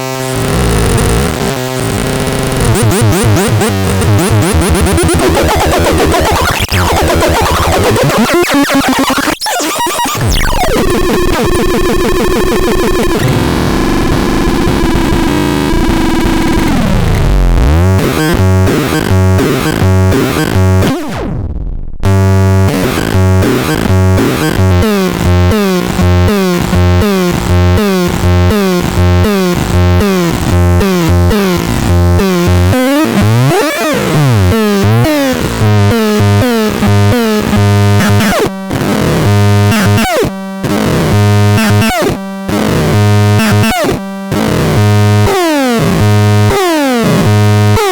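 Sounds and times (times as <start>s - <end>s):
steady synth bass: 0.4s - 47.9s
synth pitch sweeps: 2.4s - 21.2s
fast repeating synth pulses: 2.5s - 13.2s.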